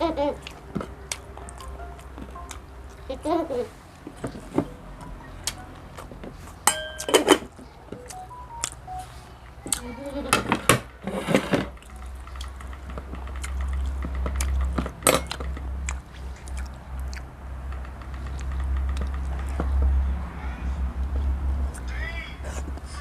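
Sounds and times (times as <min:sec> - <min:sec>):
spoons and dishes clinking: 0:06.6 - 0:07.5.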